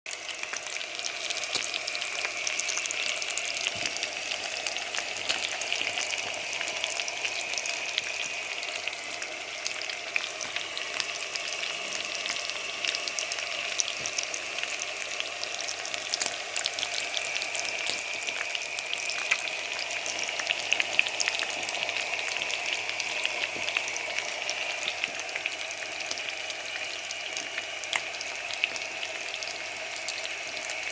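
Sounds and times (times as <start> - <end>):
chicken frying sizzle and pops: 0.1 - 30.9.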